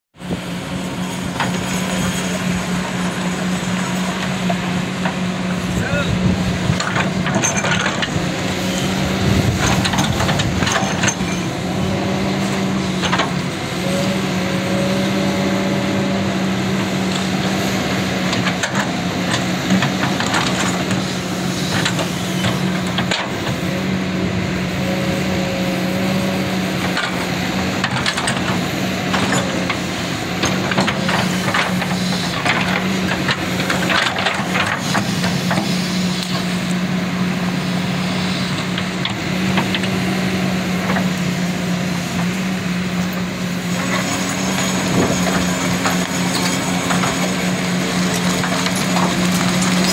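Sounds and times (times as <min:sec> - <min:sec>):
excavator diesel engine running: 0:00.2 - 0:49.9
clanks and knocks from tracks: 0:01.0 - 0:05.7, 0:06.3 - 0:08.4, 0:09.2 - 0:13.7, 0:16.6 - 0:23.7, 0:26.6 - 0:36.6, 0:42.0 - 0:49.9.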